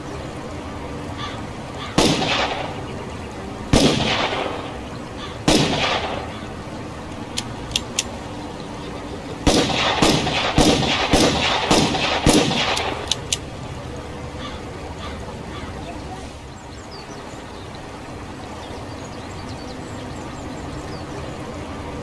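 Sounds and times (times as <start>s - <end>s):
revolver gunshots: 2.0s - 2.9s, 3.7s - 6.5s, 9.4s - 13.3s
faint clicks: 7.1s - 8.4s, 12.3s - 13.6s.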